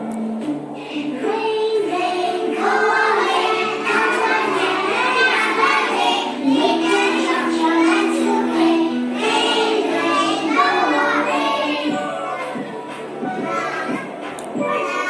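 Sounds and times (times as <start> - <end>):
children singing: 1.0 - 15.0.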